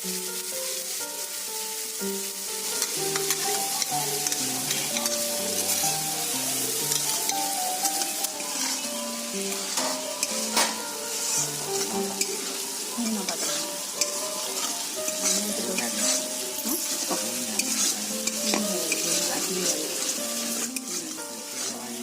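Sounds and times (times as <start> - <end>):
food sizzling in hot oil: 0.0 - 22.0
instrumental melody: 0.0 - 22.0
stirring clicks and scrapes: 6.8 - 8.8, 9.5 - 22.0.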